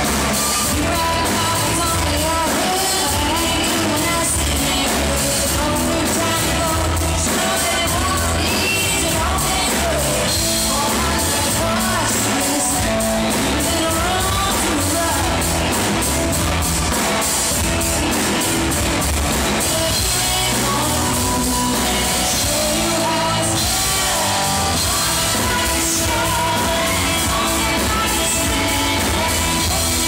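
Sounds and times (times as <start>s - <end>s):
woman singing: 0.0s - 16.1s, 16.8s - 30.0s
live rock band playing: 0.0s - 30.0s.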